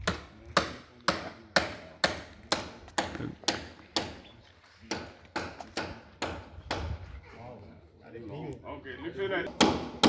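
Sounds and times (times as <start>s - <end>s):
hammer driving a nail: 9.5s - 10.0s.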